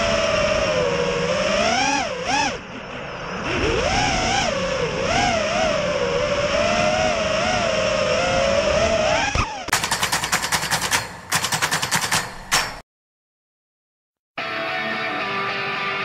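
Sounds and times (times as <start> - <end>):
quadcopter motors whining: 0.0 - 12.3.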